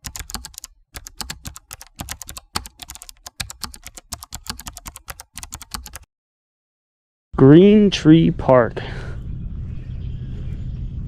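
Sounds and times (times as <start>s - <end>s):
keyboard typing: 0.0s - 6.1s.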